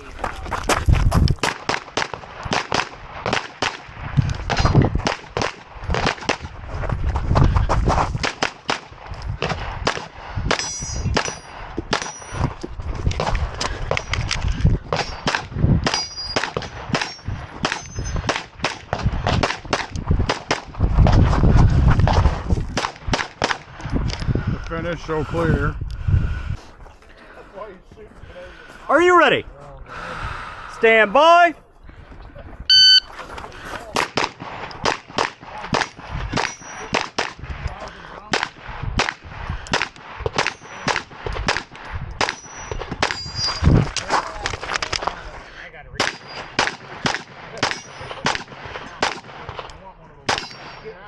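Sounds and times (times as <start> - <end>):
pistol firing shots: 1.4 - 6.5, 8.2 - 12.3, 14.9 - 20.8, 34.0 - 37.5, 38.3 - 43.3, 46.0 - 51.0.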